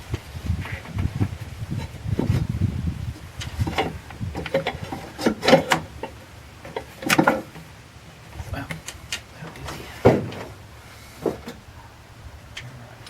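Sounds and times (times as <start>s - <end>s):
sharp clicks and knocks: 3.4s - 7.7s.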